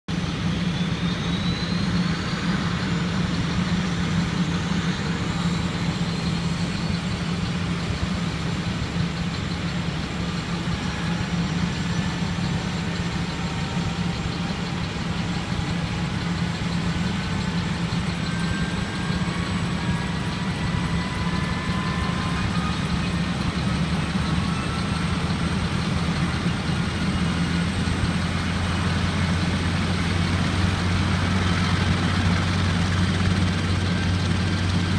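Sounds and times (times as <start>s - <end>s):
deep low drone: 0.1s - 34.9s
helicopter engine drone: 0.1s - 34.9s
high turbine whine: 0.1s - 34.9s.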